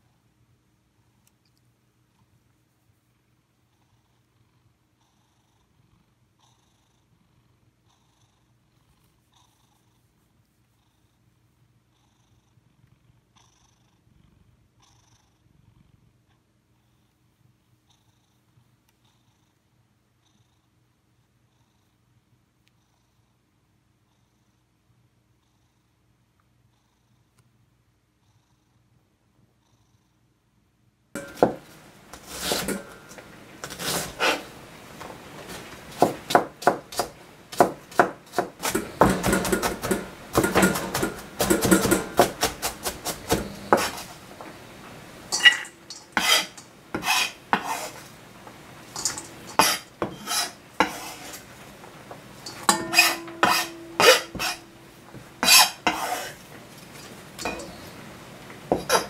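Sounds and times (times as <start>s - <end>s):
cookware and utensils clinking: 31.2s - 34.5s, 36.9s - 44.2s, 45.2s - 48.1s, 48.9s - 51.5s, 52.4s - 58.0s, 58.7s - 59.0s.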